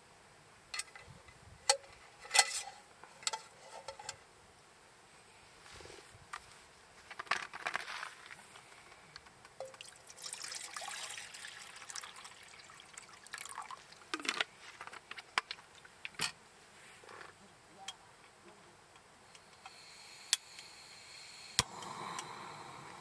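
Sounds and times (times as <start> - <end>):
liquid pouring and trickling: 9.6 - 14.3.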